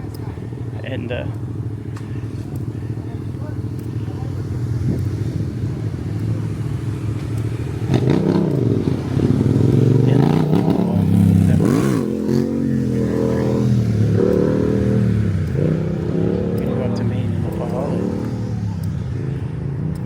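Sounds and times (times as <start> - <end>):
engine revving: 0.0 - 20.0
vehicle engines in traffic: 0.0 - 20.0.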